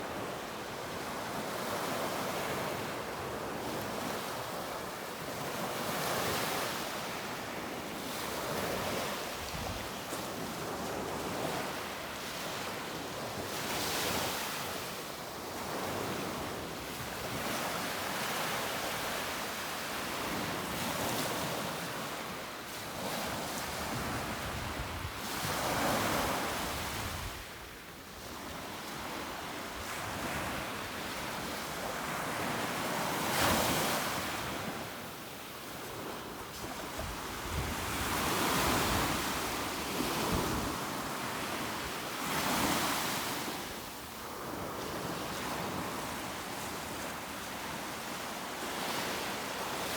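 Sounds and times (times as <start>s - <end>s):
wind noise on microphone: 8.3s - 11.7s, 23.0s - 29.2s, 35.9s - 41.0s.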